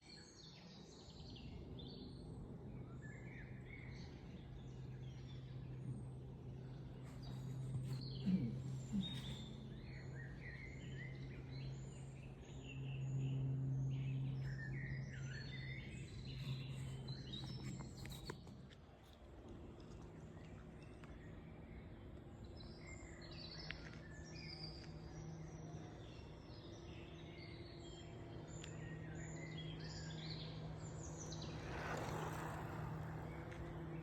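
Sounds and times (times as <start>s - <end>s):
birds chirping: 0.4s - 18.8s, 20.0s - 34.0s
steady low hum: 1.2s - 18.8s.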